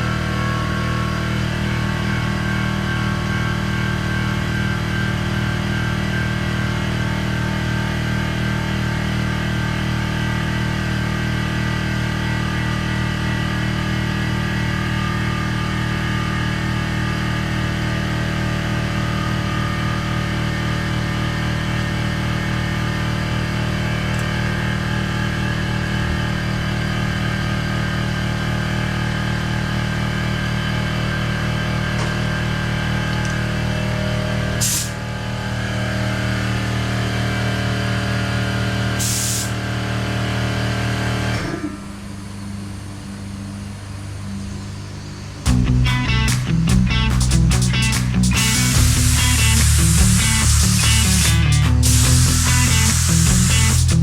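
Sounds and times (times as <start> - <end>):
air compressor running: 0.0 - 54.0
air hissing: 34.5 - 35.0, 39.0 - 39.6, 46.3 - 54.0.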